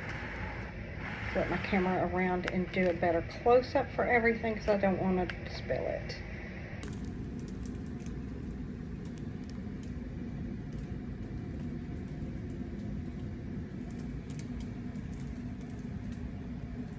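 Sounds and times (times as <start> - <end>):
low rumble: 0.0 - 16.9
faint clicks and taps: 6.8 - 16.9.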